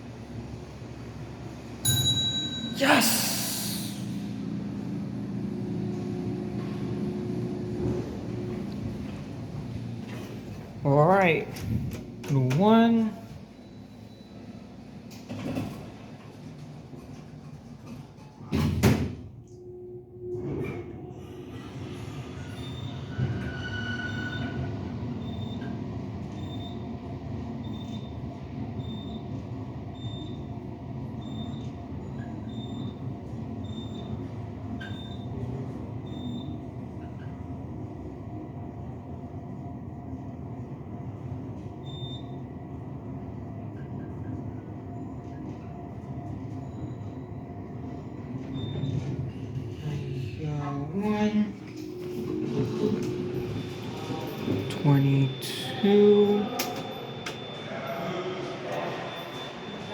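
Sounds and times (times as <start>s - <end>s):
elevator car rumble and hum: 0.0s - 59.9s
faint high beep: 54.6s - 59.9s.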